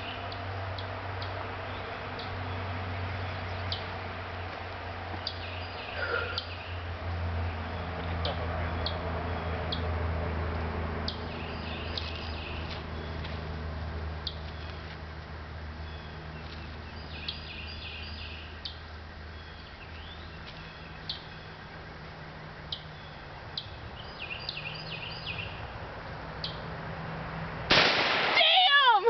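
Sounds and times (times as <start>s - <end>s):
birds chirping: 0.0s - 9.9s, 11.0s - 26.8s
sudden loud blast: 27.7s - 28.7s.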